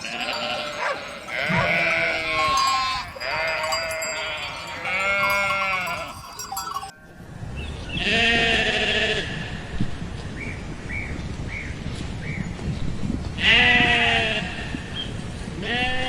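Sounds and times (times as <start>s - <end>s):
sheep bleating: 0.0s - 6.9s.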